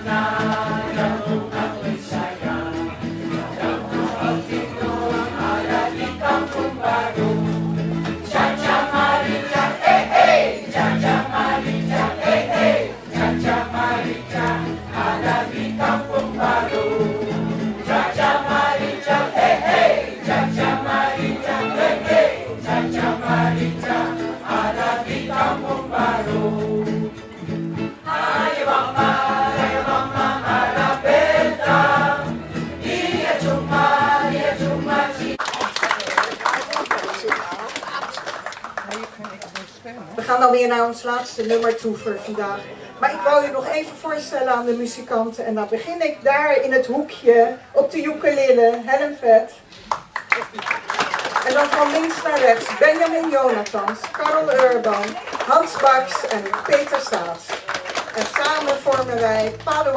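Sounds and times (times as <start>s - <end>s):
choir singing: 0.0s - 35.4s
instrumental accompaniment with bass: 0.0s - 35.4s.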